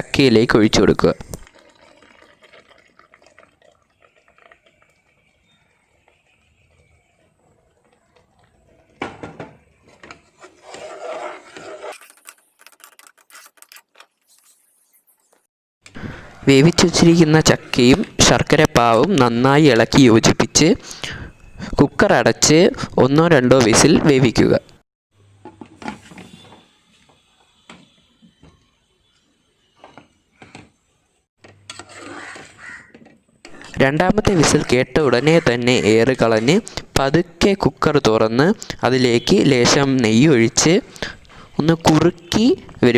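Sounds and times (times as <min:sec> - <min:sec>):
utensil scraping metal pot: 0:09.9 - 0:15.2, 0:31.6 - 0:36.9.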